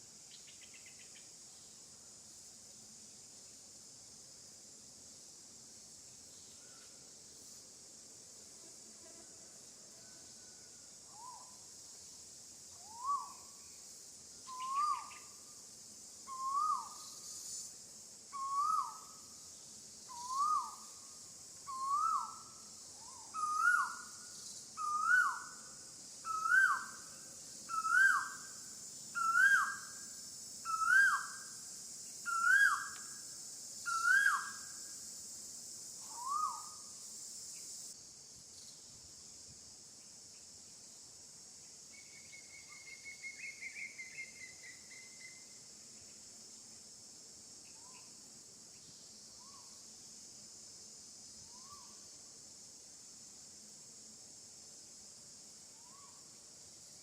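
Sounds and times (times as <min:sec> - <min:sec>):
high insect drone: 0:00.0 - 0:57.0
bird whistled call: 0:33.9 - 0:34.5.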